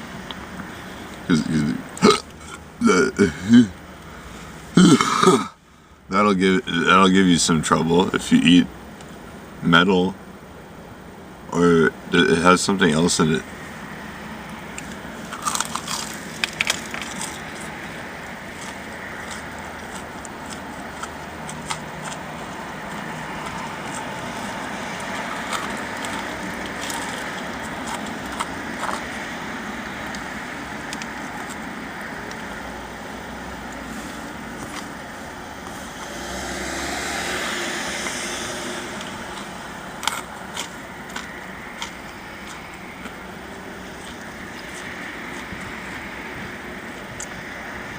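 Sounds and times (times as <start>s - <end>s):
traffic hum: 0.0s - 47.9s
vehicle passing: 12.8s - 47.9s
small crackles and clicks: 14.5s - 17.9s.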